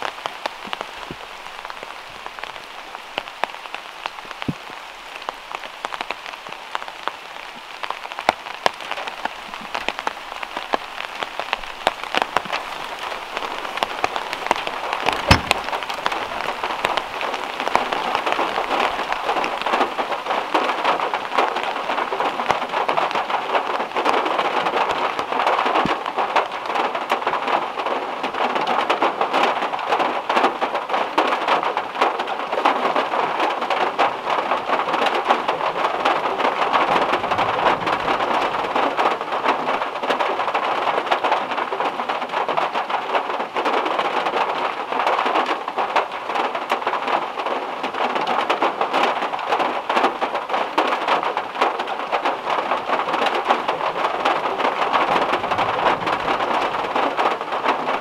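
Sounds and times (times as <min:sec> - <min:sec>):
heavy rain on a metal roof: 0:00.0 - 0:58.0.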